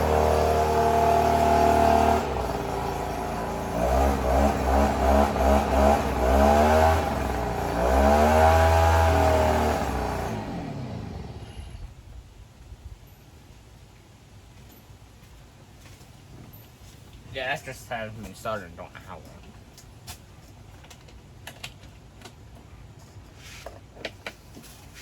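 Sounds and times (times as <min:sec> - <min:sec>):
small petrol engine revving: 0:00.0 - 0:11.9.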